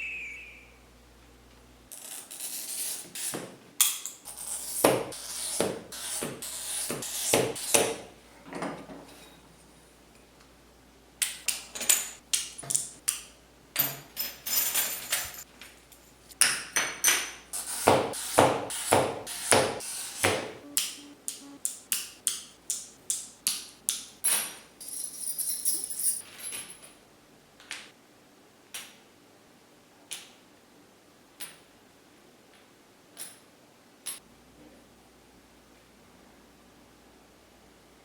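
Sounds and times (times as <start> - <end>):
glass pieces clinking: 24.4 - 26.8.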